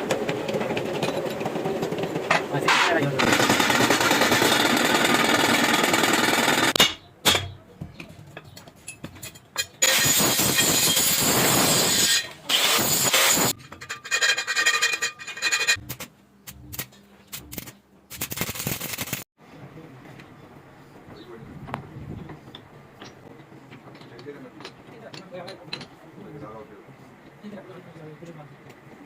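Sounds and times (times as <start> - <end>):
metal knocks and scraping: 0.0 - 17.7.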